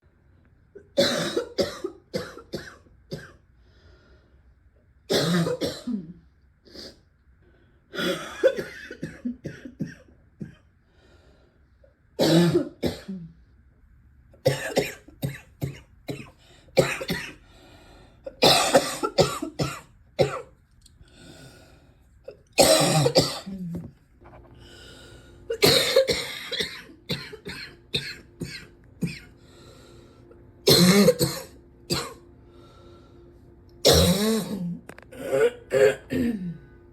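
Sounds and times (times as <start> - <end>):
person coughing deeply: 0.9 - 3.4, 5.1 - 6.2, 8.0 - 10.6, 12.2 - 13.3, 14.4 - 17.4, 18.3 - 20.5, 22.4 - 23.9, 25.5 - 29.4, 30.6 - 32.2, 33.8 - 36.6
faint breathing: 3.6 - 4.6, 10.8 - 11.8, 17.4 - 18.3, 21.0 - 22.1, 24.5 - 25.5, 29.4 - 30.4, 32.4 - 33.5.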